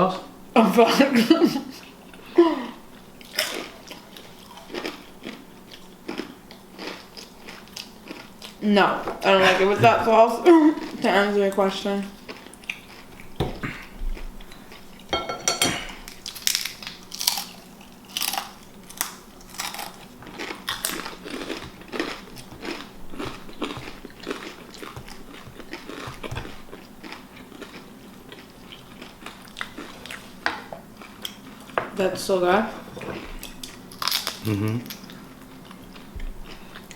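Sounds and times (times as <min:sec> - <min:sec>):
person chewing crunchy food: 0:03.2 - 0:08.6, 0:12.1 - 0:15.1, 0:15.9 - 0:31.8, 0:32.9 - 0:36.9.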